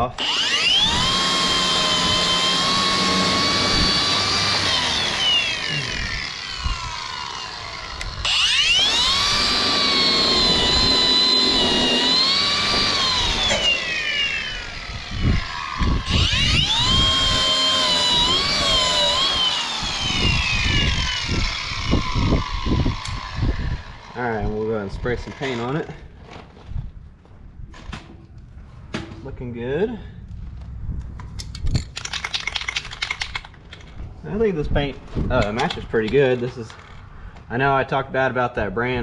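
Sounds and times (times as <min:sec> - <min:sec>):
angle grinder whining: 0:00.0 - 0:26.0.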